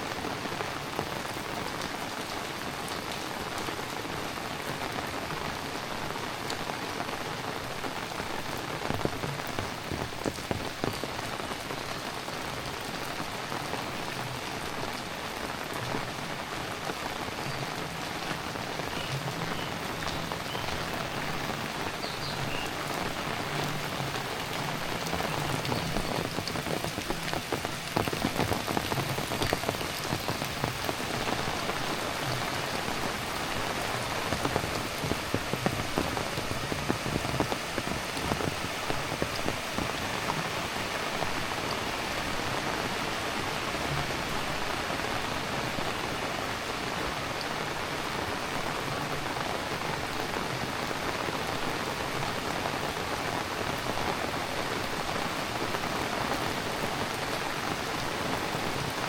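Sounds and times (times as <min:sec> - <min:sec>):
heavy rain falling: 0:00.0 - 0:59.0
close rain drop ticks: 0:17.4 - 0:39.9.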